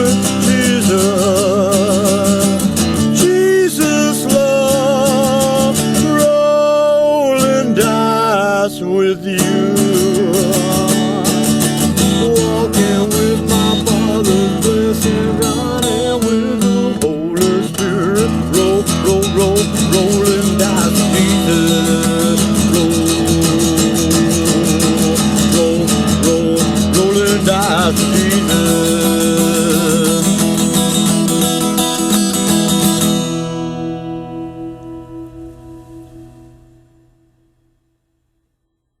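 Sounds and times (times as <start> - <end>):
acoustic guitar strumming: 0.0 - 38.3
wavering lead melody: 18.9 - 37.7.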